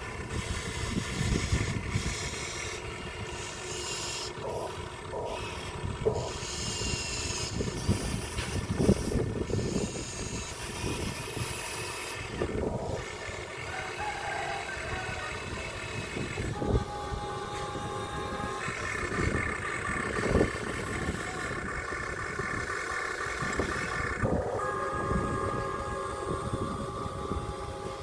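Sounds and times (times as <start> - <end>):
remote-control truck running: 0.0 - 28.0.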